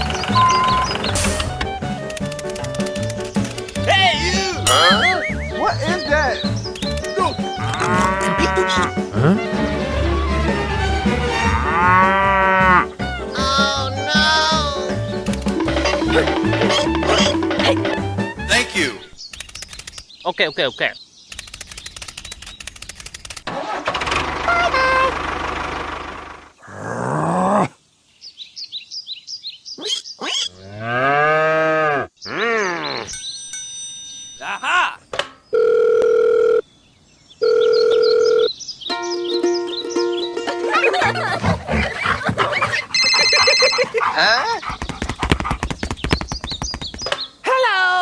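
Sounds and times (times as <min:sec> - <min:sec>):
high bird chirps: 0:00.0 - 0:01.6, 0:04.0 - 0:07.8, 0:37.7 - 0:40.7
background music: 0:00.0 - 0:19.1, 0:38.9 - 0:41.9
cattle mooing: 0:07.6 - 0:12.9.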